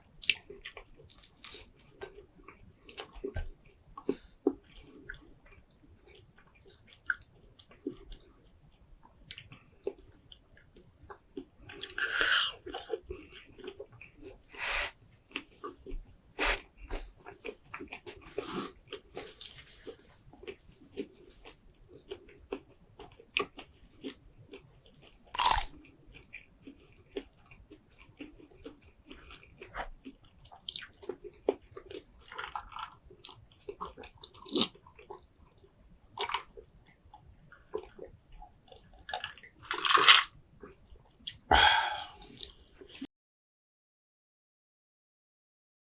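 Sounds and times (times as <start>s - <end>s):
wet chewing and lip smacks: 0.2s - 8.3s, 9.2s - 14.4s, 16.9s - 35.2s
crunchy bites: 25.4s - 25.8s, 39.1s - 40.3s.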